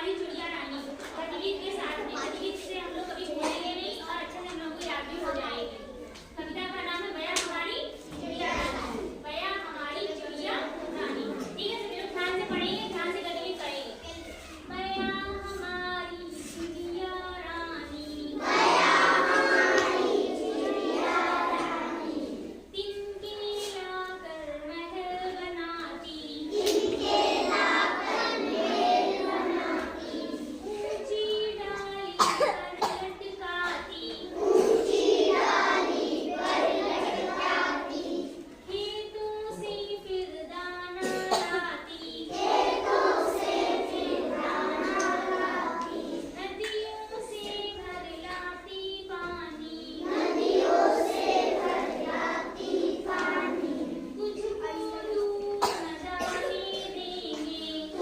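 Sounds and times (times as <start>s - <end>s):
child chanting: 0.0s - 58.0s
children chanting together: 8.0s - 9.2s, 10.1s - 13.0s, 18.1s - 22.7s, 26.3s - 31.5s, 33.6s - 38.6s, 41.0s - 47.8s, 49.2s - 58.0s.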